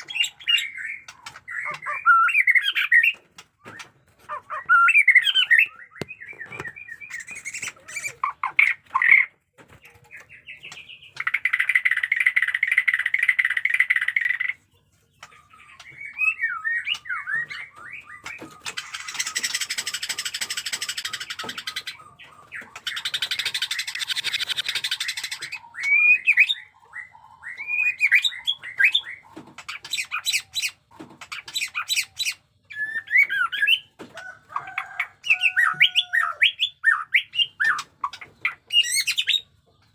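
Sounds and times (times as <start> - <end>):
bird whistling and rattling: 15.6 - 26.7.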